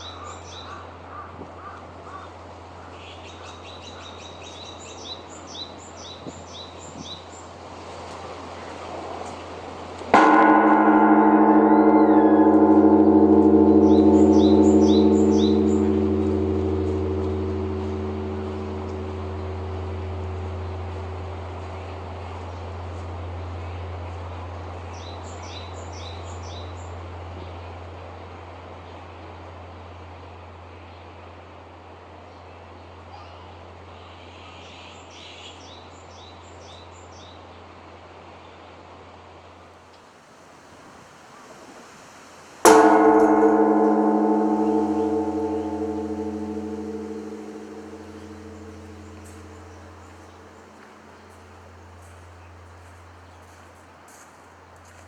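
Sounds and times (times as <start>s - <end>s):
low hum of bronze bell: 10.2s - 22.6s, 42.7s - 51.8s.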